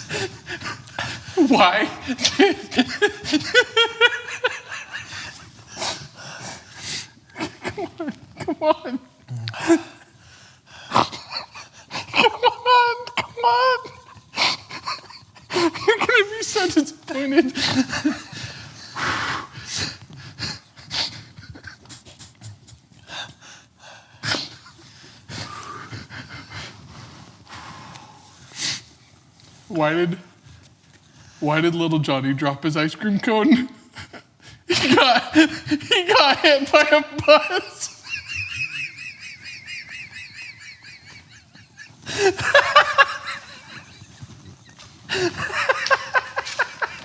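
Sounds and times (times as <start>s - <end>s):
person panting: 4.8s - 7.6s, 17.6s - 28.9s.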